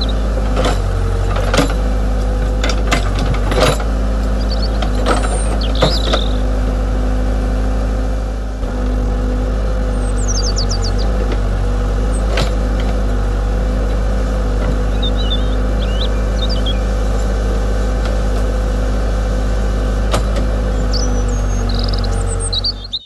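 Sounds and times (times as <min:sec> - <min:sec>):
birds chirping: 0:00.0 - 0:01.3, 0:03.2 - 0:06.8, 0:09.6 - 0:18.3, 0:20.5 - 0:23.0
model excavator motor whining: 0:00.0 - 0:23.0.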